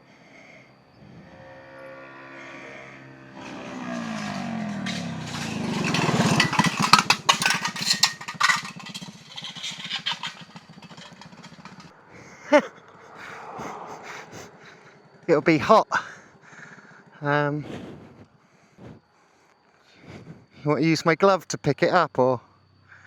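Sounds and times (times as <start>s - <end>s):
motorcycle engine: 0.8s - 12.1s
knocks and rattles: 3.3s - 12.0s.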